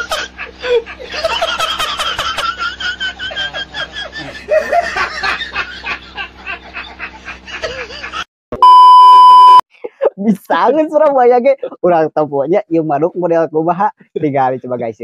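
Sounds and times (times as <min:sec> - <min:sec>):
people laughing: 0:00.0 - 0:08.3
loud steady bleep tone: 0:08.6 - 0:09.6.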